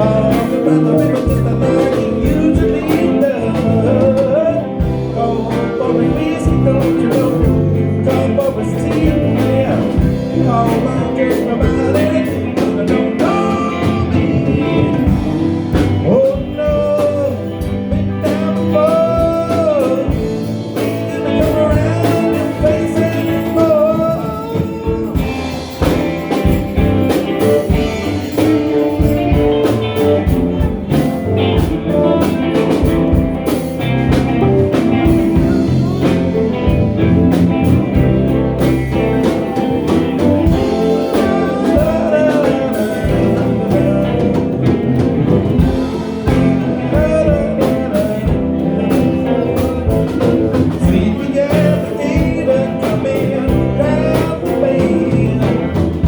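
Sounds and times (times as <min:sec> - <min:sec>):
band playing blues song: 0:00.0 - 0:56.0
guitar: 0:00.0 - 0:56.0
person singing: 0:00.0 - 0:56.0.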